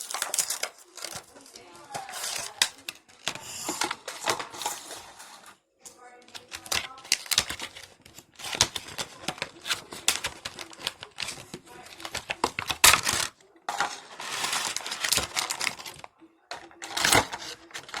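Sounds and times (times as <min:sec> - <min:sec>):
plastic packaging clicks and taps: 0:00.0 - 0:04.6, 0:06.2 - 0:13.3, 0:14.6 - 0:18.0
packaging rustling crinkle: 0:00.0 - 0:05.5, 0:06.3 - 0:18.0.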